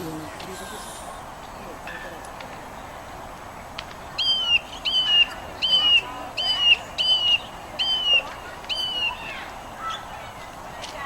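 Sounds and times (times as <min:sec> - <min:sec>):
bird whistling notes: 0:04.1 - 0:10.0.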